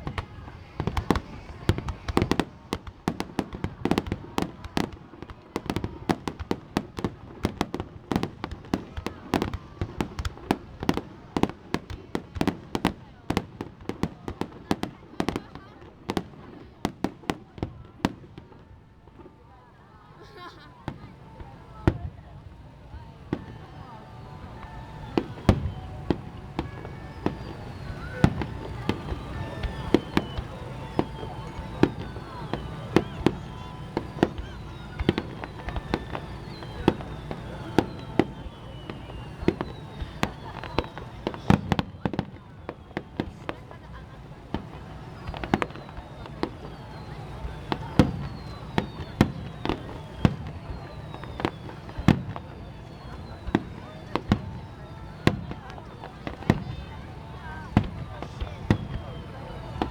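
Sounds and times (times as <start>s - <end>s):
fireworks bursting: 0.0s - 59.9s
fireworks crackling: 0.0s - 59.9s.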